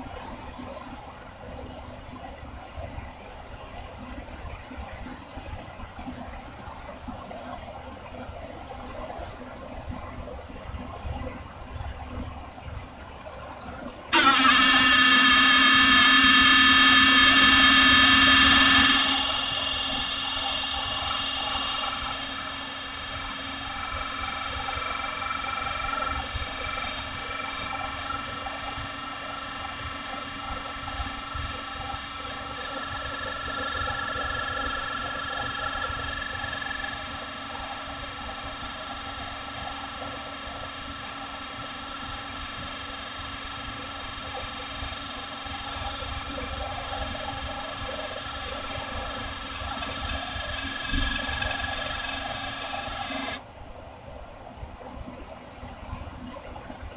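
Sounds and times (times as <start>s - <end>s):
computer high-pitched whine: 14.2s - 53.4s
low hum: 14.2s - 53.4s.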